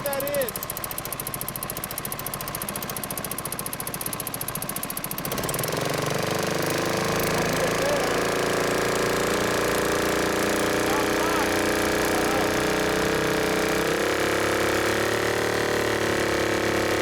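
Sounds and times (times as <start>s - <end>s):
fast metallic pinging: 0.0s - 15.0s
boat motor running: 0.0s - 17.0s.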